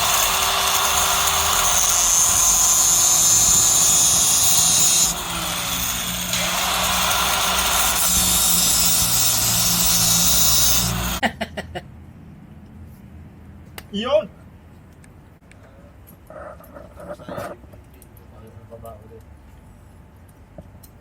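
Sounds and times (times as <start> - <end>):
power cutting tool grinding: 0.0 - 11.2.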